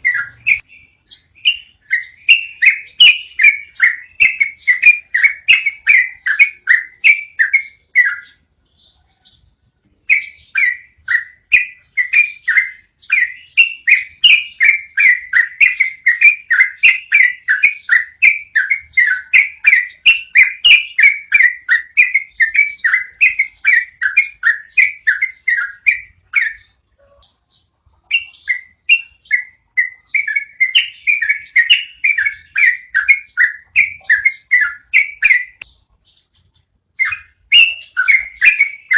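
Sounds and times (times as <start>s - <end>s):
bulbul singing rapid notes: 10.0s - 38.9s.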